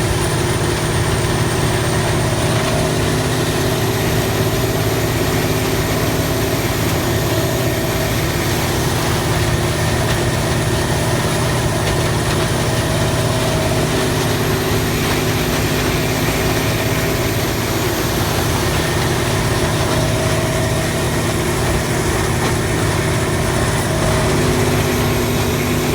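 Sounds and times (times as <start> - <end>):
diesel engine running steadily: 0.0 - 25.9.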